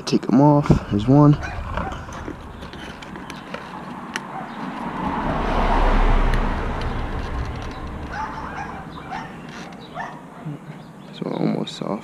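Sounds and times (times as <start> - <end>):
vehicle driving past: 0.8 - 10.0.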